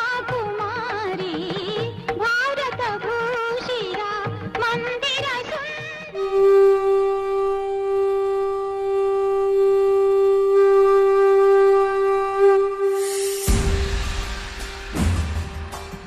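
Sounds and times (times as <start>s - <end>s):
conch shell blown: 6.2s - 14.9s.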